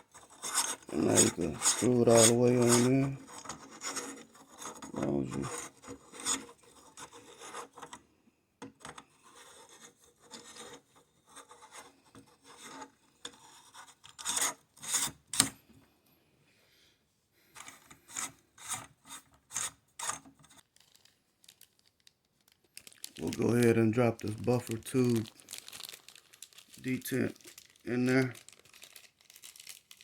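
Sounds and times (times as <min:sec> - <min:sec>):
metal scraping on metal: 0:00.0 - 0:07.9.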